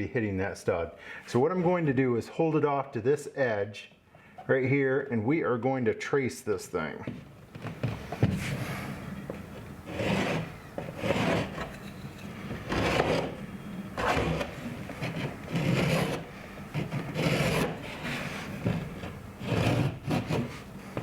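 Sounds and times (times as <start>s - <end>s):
marker scratching on drywall: 7.6s - 21.0s.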